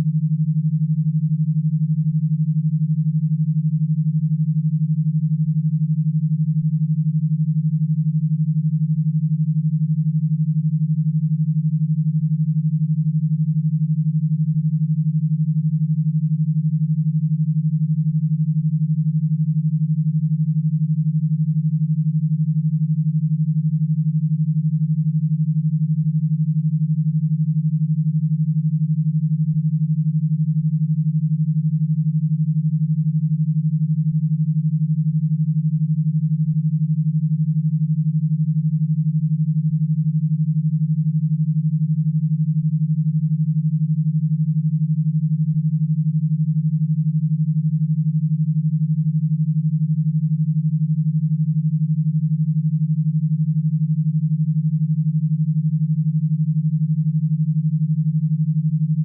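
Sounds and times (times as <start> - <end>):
low fluttering electronic tone: 0.0 - 3.9.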